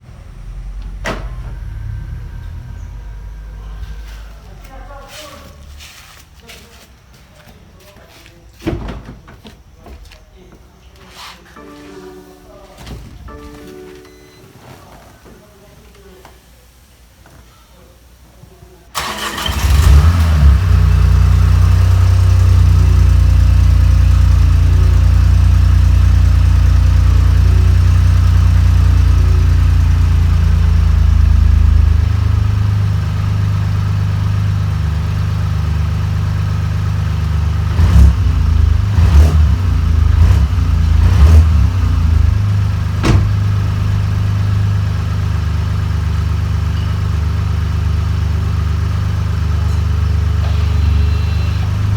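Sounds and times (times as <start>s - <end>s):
engine throttle blips: 0.0s - 5.0s, 46.7s - 51.9s
car engine starting and idling: 0.0s - 5.2s, 18.9s - 51.9s.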